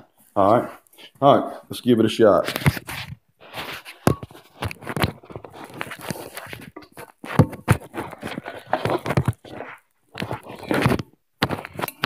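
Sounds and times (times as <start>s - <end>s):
handling knocks and scrapes: 2.4s - 12.0s.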